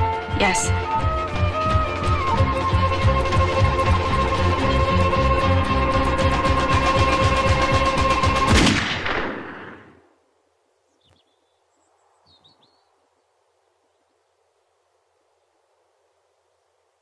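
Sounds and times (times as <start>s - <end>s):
trailer music with percussive strokes: 0.7s - 8.6s.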